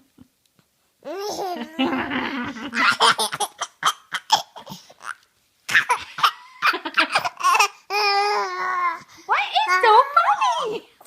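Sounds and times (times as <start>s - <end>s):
baby laughing: 1.1s - 9.0s.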